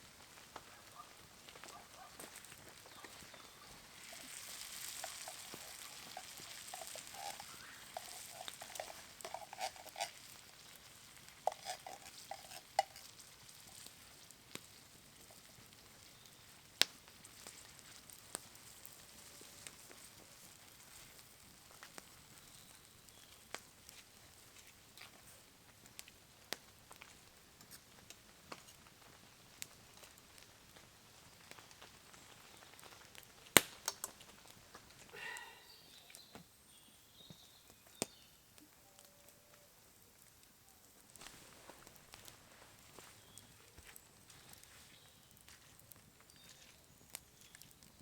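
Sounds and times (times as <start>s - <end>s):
food sizzling in a pan: 2.3s - 24.8s
scraping squeaks of stirring: 4.2s - 10.4s, 11.4s - 13.1s.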